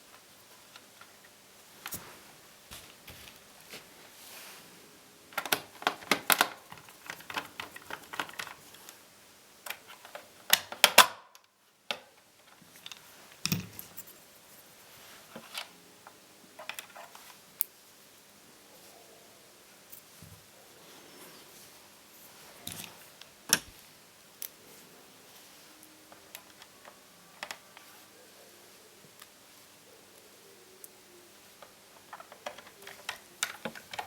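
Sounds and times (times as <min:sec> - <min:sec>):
small laptop parts clicking: 0:05.4 - 0:08.8, 0:31.6 - 0:34.0.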